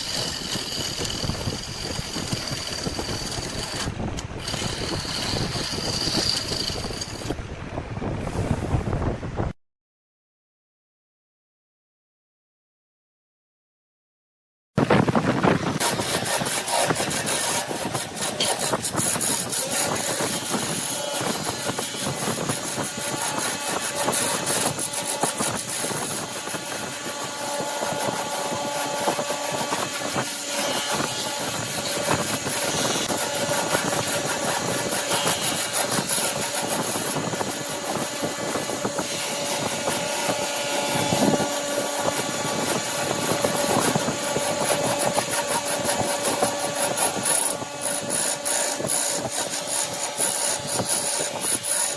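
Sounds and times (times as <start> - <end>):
turning tool scraping spinning wood: 0.0 - 7.4, 15.4 - 51.9
faint lathe motor whine: 16.0 - 51.9.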